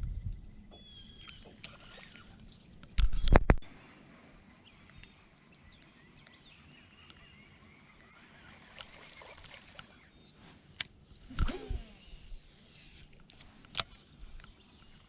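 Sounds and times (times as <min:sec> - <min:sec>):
faint high bird chirps: 0:00.1 - 0:02.2, 0:04.4 - 0:10.4.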